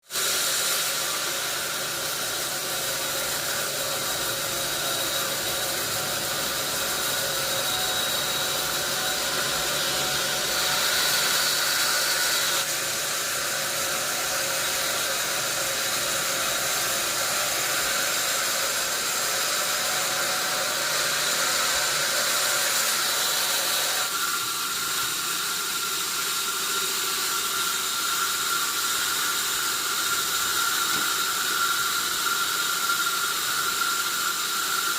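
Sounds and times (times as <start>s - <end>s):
sawmill saw cutting log: 0.0s - 34.9s.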